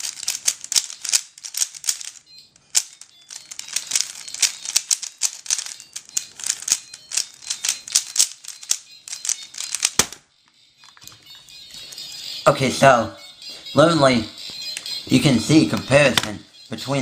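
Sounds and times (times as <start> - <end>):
puzzle cube plastic clicks: 0.0 - 10.2.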